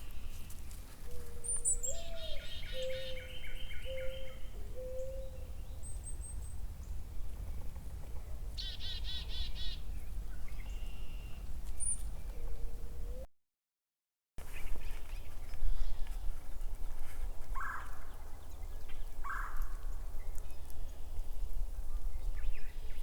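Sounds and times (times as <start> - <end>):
bird call with held notes: 1.4 - 5.4.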